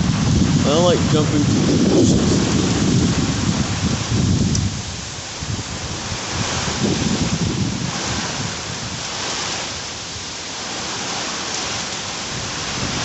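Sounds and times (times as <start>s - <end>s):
gusting wind: 0.0s - 13.0s
heavy rain: 0.0s - 13.0s
low thunder rumble: 0.0s - 13.0s.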